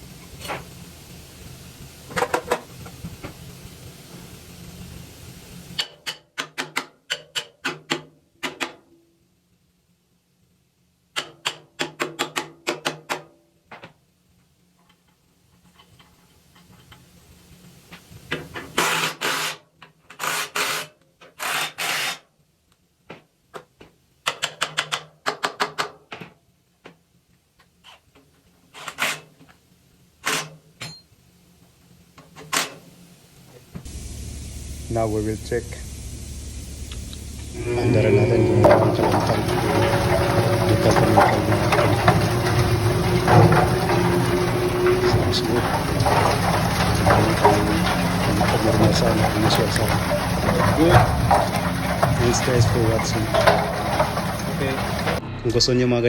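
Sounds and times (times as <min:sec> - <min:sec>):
steady low hum: 0:33.9 - 0:55.8.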